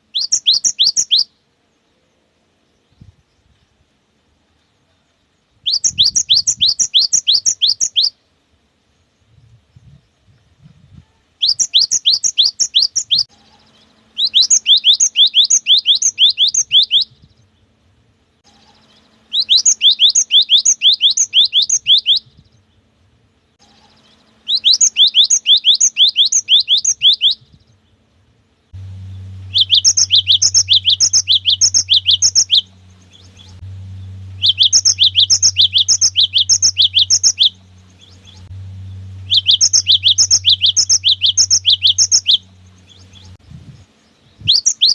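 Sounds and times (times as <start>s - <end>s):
low electrical hum: 0.0s - 44.9s
bird singing two-note song: 28.8s - 43.4s.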